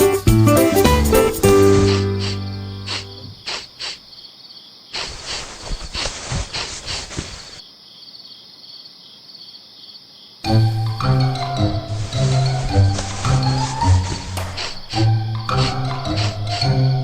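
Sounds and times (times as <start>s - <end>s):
cricket chirping: 1.4s - 17.0s
soft rustling and clicking: 5.0s - 7.6s, 12.0s - 16.7s.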